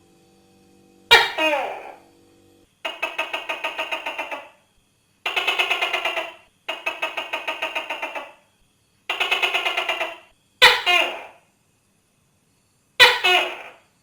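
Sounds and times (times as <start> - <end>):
gecko rattling call: 2.8 - 4.6, 5.2 - 8.4, 9.1 - 11.4.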